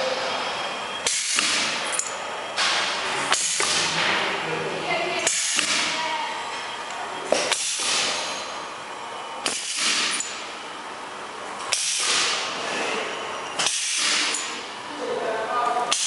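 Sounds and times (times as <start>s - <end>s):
packaging machine hissing: 1.1s - 1.8s, 2.8s - 4.0s, 7.4s - 8.4s, 9.5s - 10.5s, 11.7s - 14.7s.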